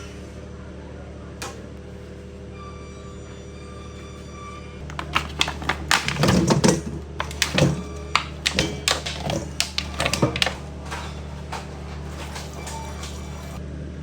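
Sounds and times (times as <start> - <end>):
kitchen knocks and clatters: 4.8 - 13.6.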